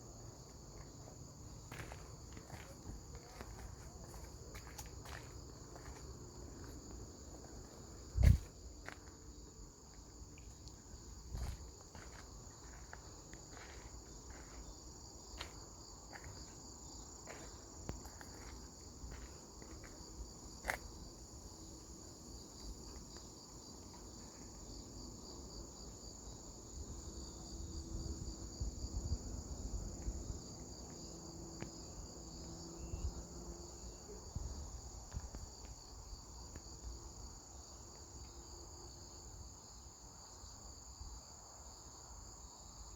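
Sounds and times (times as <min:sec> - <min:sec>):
insects trilling: 0:00.0 - 0:42.9.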